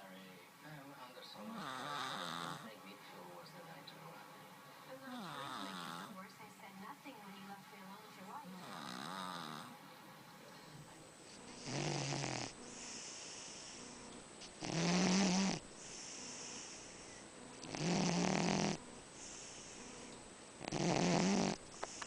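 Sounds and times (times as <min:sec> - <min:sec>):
cat snoring: 0:01.4 - 0:02.8, 0:05.0 - 0:06.2, 0:08.5 - 0:09.8, 0:11.5 - 0:14.0, 0:14.6 - 0:22.0
cat breathing softly: 0:15.7 - 0:17.3, 0:19.1 - 0:20.2.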